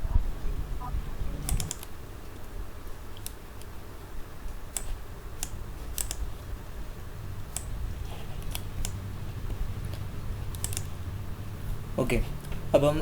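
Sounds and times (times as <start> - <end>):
low steady hum: 0.0 - 13.0
keyboard key clicks: 1.4 - 1.9, 4.7 - 6.3, 9.9 - 10.9.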